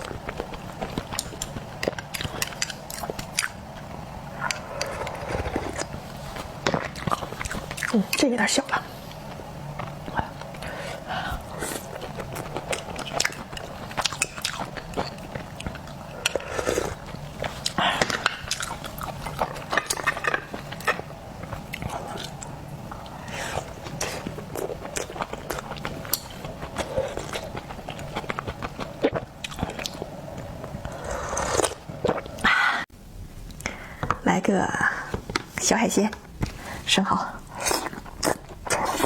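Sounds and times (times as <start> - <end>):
person chewing with wet smacks: 11.8 - 23.0, 23.9 - 30.1.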